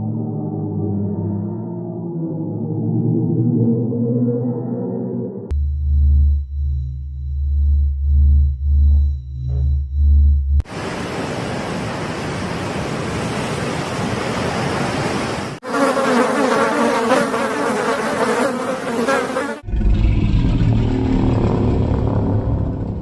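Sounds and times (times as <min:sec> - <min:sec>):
ocean water splashing: 0:10.6 - 0:15.6
insects buzzing: 0:15.6 - 0:19.6
low dinosaur growl: 0:19.6 - 0:23.0.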